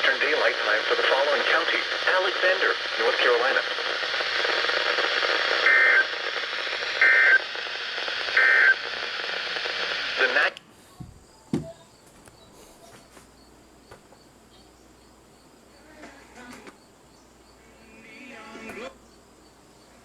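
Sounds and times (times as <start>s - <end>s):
radio receiver hiss: 0.0s - 13.2s, 17.5s - 19.0s
data burst tones: 4.0s - 10.4s
soft thump: 11.0s - 11.8s.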